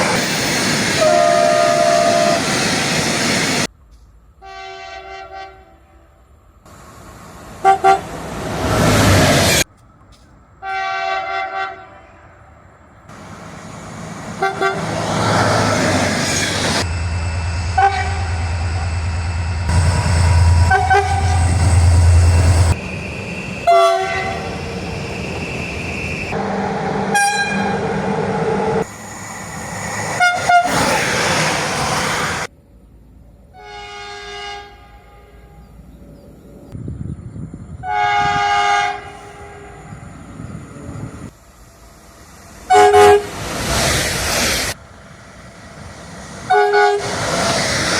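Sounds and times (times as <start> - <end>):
train passing: 0.0 - 47.9
train horn blasts: 1.0 - 2.5, 4.4 - 6.2, 7.6 - 8.1, 10.6 - 12.5, 14.4 - 15.1, 17.7 - 19.0, 19.7 - 22.8, 23.6 - 24.5, 27.1 - 27.9, 33.5 - 35.7, 37.8 - 40.0, 42.7 - 43.4, 46.5 - 47.1
train horn toots: 1.0 - 2.5, 4.4 - 6.2, 7.6 - 8.1, 10.6 - 12.5, 14.4 - 15.1, 17.7 - 18.9, 19.7 - 22.8, 23.6 - 24.5, 27.1 - 27.9, 33.5 - 35.8, 37.8 - 40.0, 42.7 - 43.4, 46.5 - 47.1.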